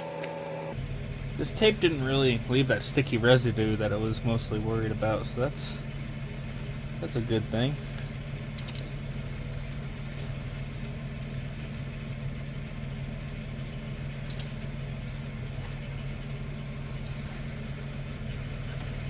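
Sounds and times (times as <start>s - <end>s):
steady low hum: 0.0s - 19.0s
faint clicks of handled wiring: 8.0s - 9.6s, 14.1s - 14.6s.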